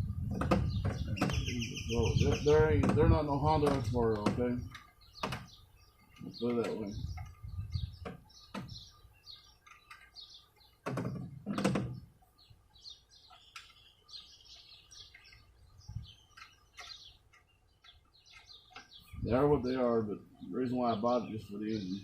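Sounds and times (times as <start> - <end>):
small birds chirping: 0.0 - 22.0
knocks: 2.8 - 4.5.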